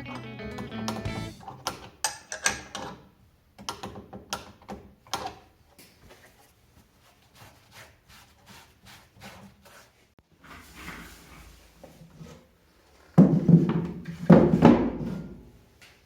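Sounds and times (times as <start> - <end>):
parts clicking and knocking: 0.1 - 6.1.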